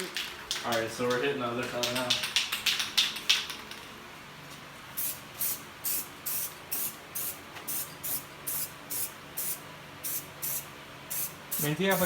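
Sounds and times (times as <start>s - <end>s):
spray paint can bursts: 5.0s - 12.0s.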